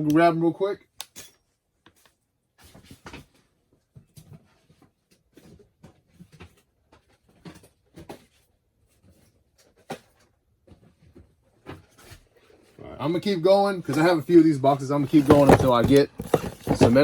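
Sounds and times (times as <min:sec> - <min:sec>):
cardboard boxes rustling: 0:14.6 - 0:17.0.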